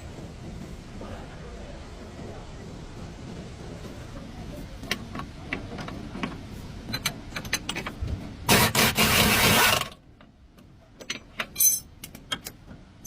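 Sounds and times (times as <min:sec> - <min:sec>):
air tool rasping burst: 0:08.5 - 0:09.9.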